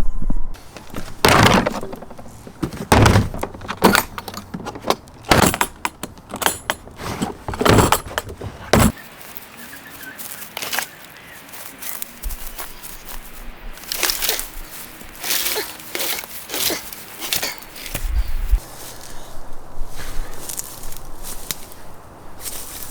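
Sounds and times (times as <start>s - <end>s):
wooden bench cracking and knocking: 0.6s - 9.0s.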